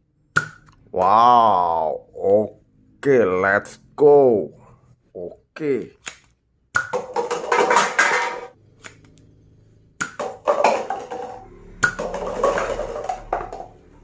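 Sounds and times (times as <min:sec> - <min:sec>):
plastic toy parts clattering: 0:06.9 - 0:08.6, 0:10.1 - 0:13.7.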